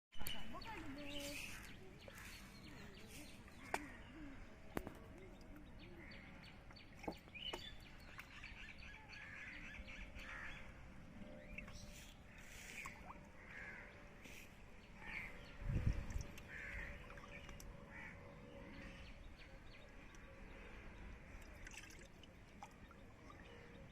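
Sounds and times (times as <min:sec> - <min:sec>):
small birds chirping: 0:00.1 - 0:10.6.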